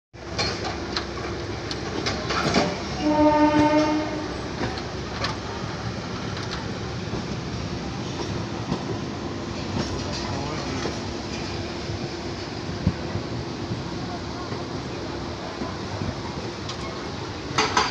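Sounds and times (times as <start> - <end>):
rail rumble: 0.2 - 17.9
train horn: 3.0 - 4.4.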